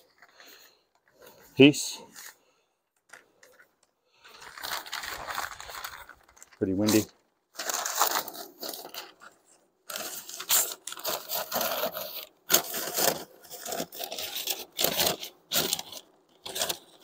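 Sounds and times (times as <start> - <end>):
newspaper rustling and crinkling: 4.1 - 17.0.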